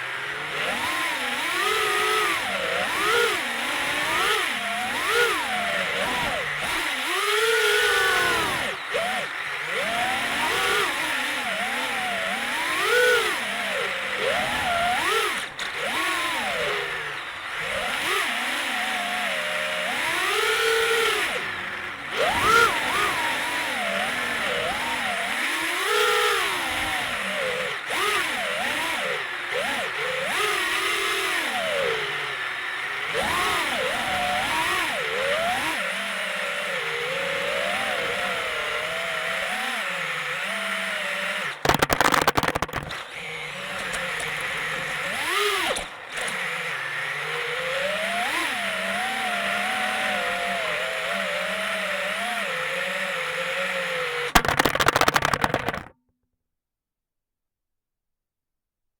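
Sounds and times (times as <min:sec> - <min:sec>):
drone motors whining: 0:00.0 - 0:55.9.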